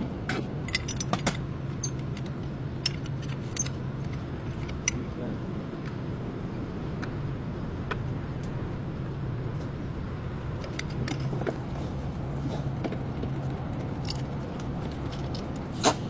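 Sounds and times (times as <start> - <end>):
steady low hum: 0.0 - 16.0
metallic tool clicks and clinks: 0.7 - 5.0.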